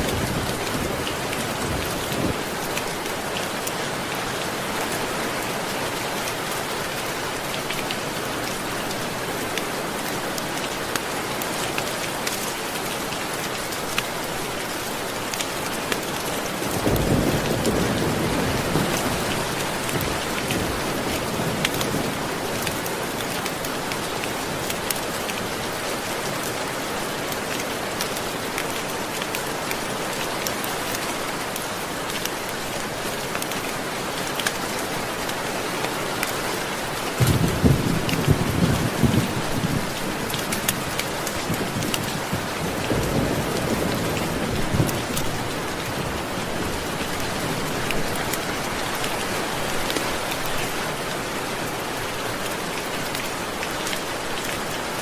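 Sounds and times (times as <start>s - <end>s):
steady rain: 0.0s - 55.0s
thunder rumbling: 37.2s - 40.0s.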